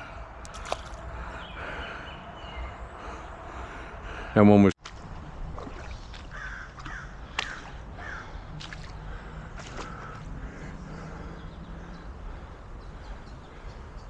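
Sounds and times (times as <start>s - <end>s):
crows cawing: 6.3s - 12.6s.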